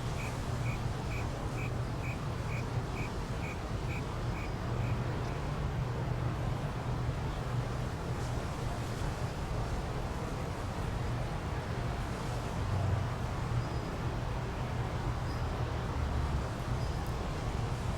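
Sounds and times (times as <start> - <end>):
constant hiss: 0.0 - 6.0.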